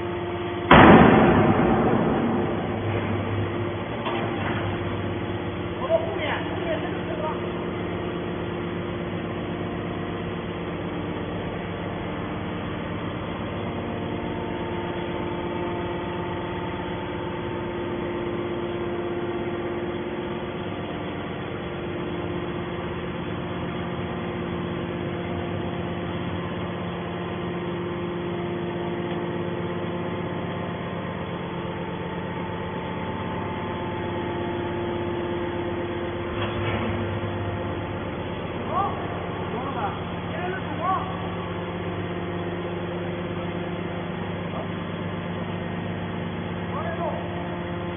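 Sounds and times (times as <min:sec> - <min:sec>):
hydraulic power unit droning: 0:00.0 - 0:47.9.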